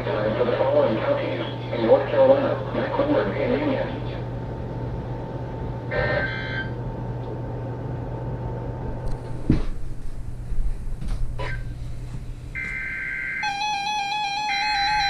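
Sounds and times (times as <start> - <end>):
radio receiver hum and hiss: 0.0 - 8.1.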